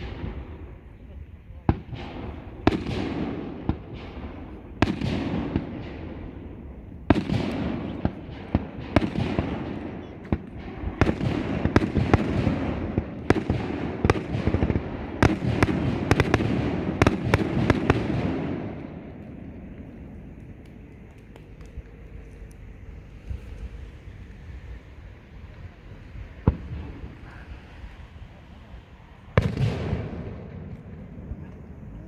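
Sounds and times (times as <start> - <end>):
rolling rumble: 0.0 - 32.0
aerial fireworks bangs: 7.1 - 19.1, 29.4 - 31.0.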